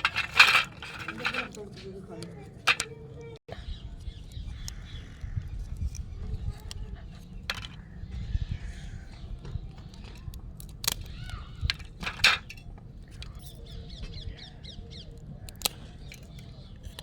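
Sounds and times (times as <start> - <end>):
clay pieces cracking and crunching: 7.4 - 7.8, 9.7 - 13.6, 15.2 - 17.0.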